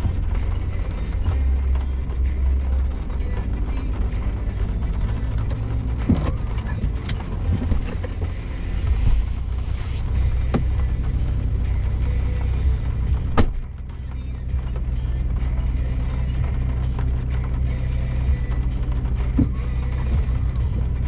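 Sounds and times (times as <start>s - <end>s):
body and suspension knocks and rattles: 0.0s - 11.8s, 12.8s - 15.0s
vehicle engine droning: 0.0s - 21.0s.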